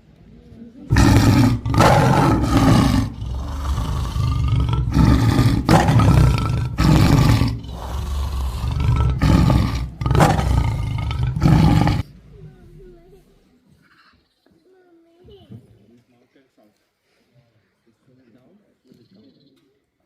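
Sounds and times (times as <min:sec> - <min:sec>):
tigers roaring: 0:00.9 - 0:12.9.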